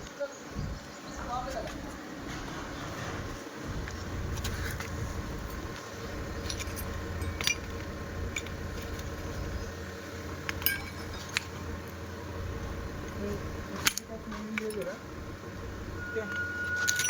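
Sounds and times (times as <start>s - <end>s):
diesel engine rumbling: 0.0s - 17.0s
sharp metallic clinks: 4.4s - 12.0s, 12.6s - 17.0s.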